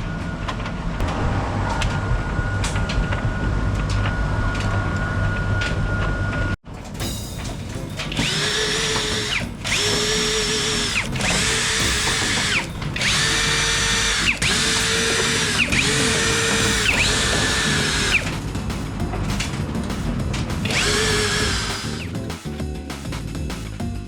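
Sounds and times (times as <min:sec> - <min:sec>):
power drill whining: 0:08.2 - 0:18.4, 0:20.7 - 0:22.1.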